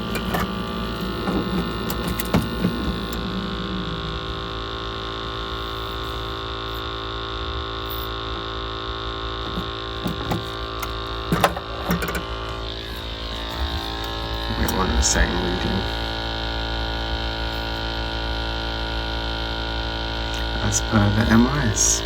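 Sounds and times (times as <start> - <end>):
gas boiler fan humming: 0.0 - 22.0.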